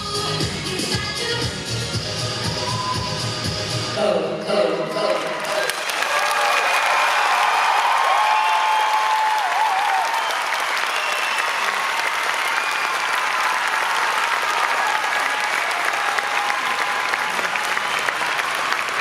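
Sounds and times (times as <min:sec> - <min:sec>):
audience applauding: 0:05.2 - 0:19.0.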